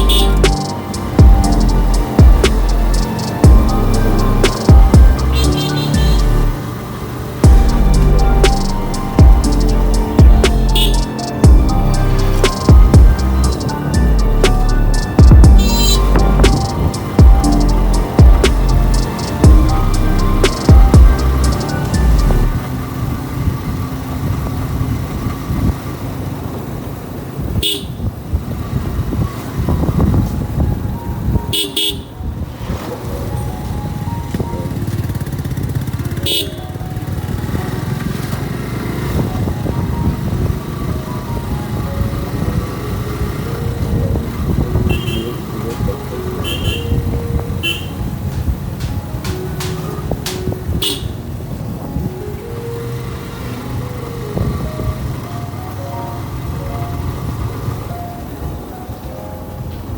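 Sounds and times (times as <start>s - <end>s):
short high horn beeps: 0.0s - 0.7s, 5.3s - 6.6s, 10.6s - 11.1s, 15.6s - 16.3s, 44.9s - 45.5s, 46.4s - 47.0s, 47.6s - 48.0s
car horn toots: 0.0s - 6.6s, 10.2s - 13.7s, 14.6s - 17.9s, 27.6s - 28.2s, 31.5s - 32.2s, 36.1s - 36.7s, 44.8s - 48.2s, 49.3s - 51.3s
vehicle rumbling on road: 0.0s - 59.9s.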